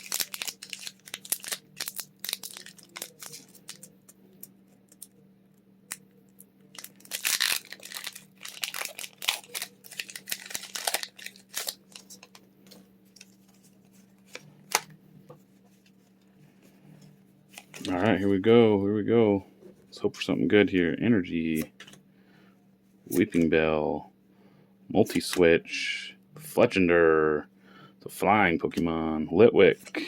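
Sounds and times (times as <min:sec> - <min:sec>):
foil wrapper tearing: 0:00.0 - 0:04.1, 0:06.7 - 0:12.4
foil wrapper crinkling: 0:00.0 - 0:05.1, 0:06.7 - 0:14.9.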